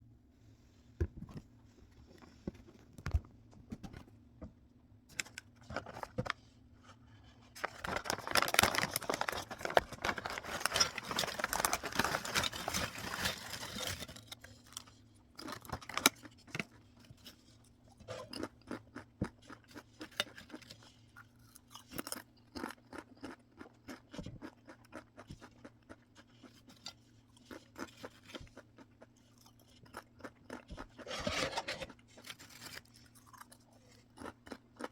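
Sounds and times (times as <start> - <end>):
crunchy snacks crackling: 7.6 - 16.8, 18.2 - 26.6, 27.3 - 34.9.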